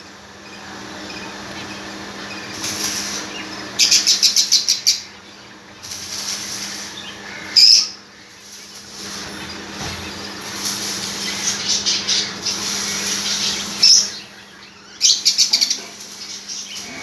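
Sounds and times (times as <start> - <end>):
finches chirping: 3.2 - 5.8, 6.6 - 17.0.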